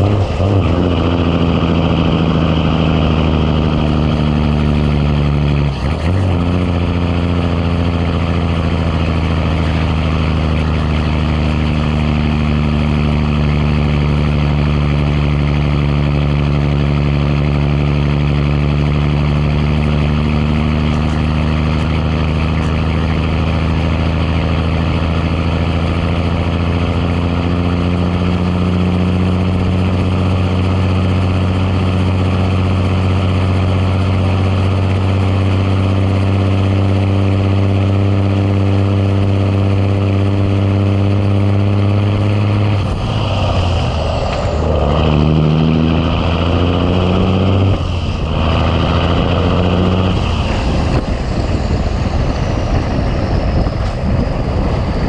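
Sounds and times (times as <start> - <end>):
diesel truck engine under load: 0.0 - 55.0.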